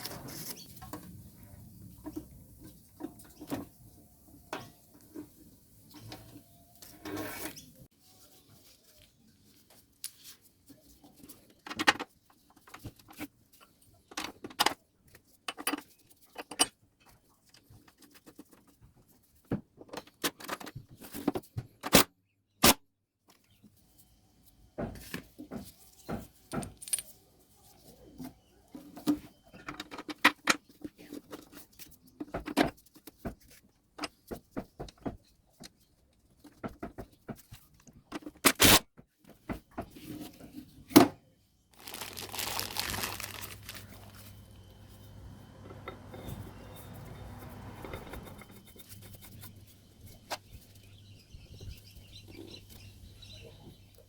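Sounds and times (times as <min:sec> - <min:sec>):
small parts and tools clinking: 0:26.6 - 0:27.2.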